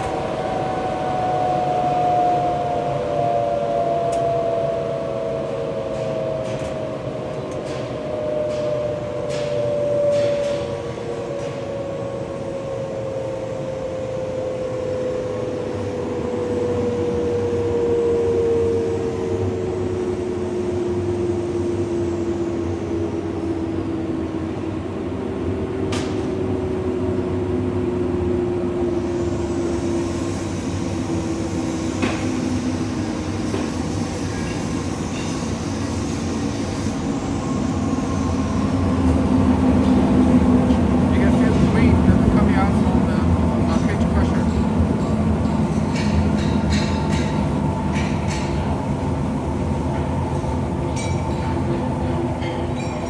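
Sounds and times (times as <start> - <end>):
mill rotors running: 37.4 - 52.0.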